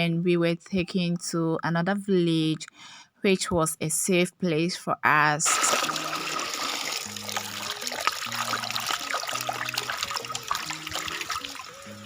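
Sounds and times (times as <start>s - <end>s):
water running and splashing: 5.5s - 12.0s
background music bass notes: 5.6s - 12.0s.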